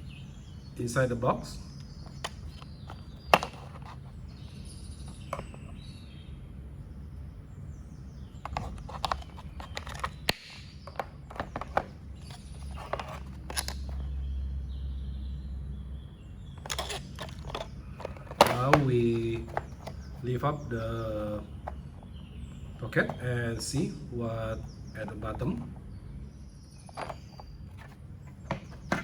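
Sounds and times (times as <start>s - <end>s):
low steady hum: 0.0s - 29.0s
plastic clicks and light knocks: 1.8s - 4.1s, 8.4s - 14.1s, 16.6s - 20.3s, 26.9s - 29.0s.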